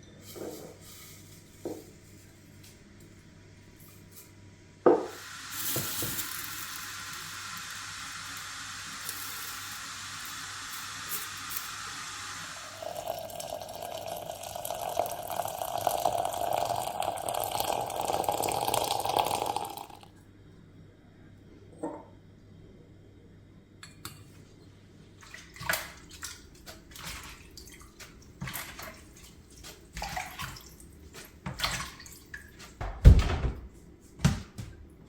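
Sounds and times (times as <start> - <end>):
knock: 4.9 - 5.1
water filling a container: 5.1 - 20.1, 25.3 - 32.6.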